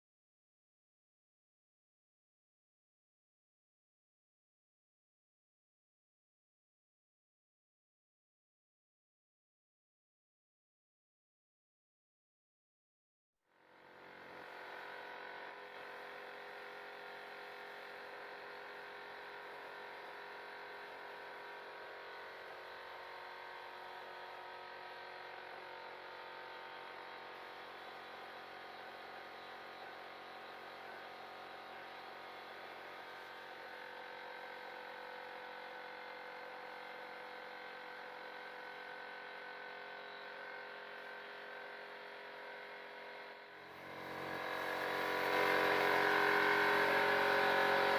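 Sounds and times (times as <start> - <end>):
steady mechanical hum: 13.8 - 47.9.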